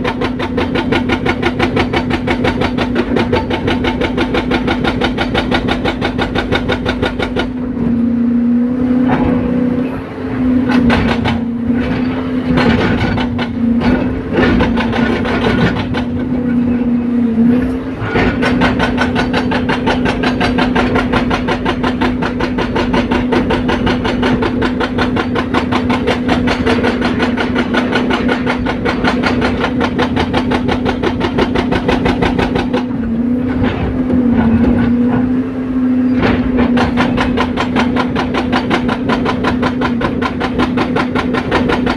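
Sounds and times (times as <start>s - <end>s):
hydraulic breaker hammering asphalt: 0.0s - 7.8s, 10.6s - 16.5s, 18.0s - 35.3s, 36.2s - 41.9s
excavator diesel engine running: 0.0s - 41.9s.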